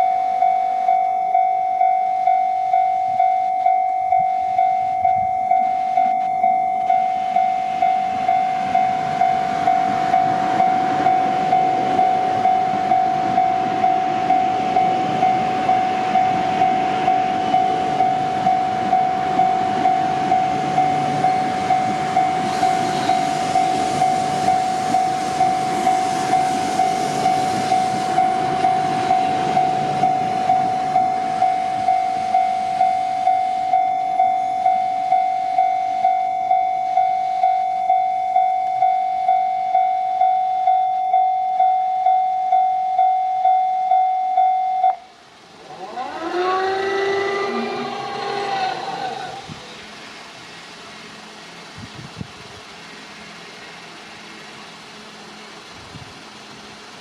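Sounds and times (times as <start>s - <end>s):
level crossing bell ringing: 0.0s - 22.8s, 25.4s - 45.0s
train wheels rumbling on rails: 0.0s - 57.0s.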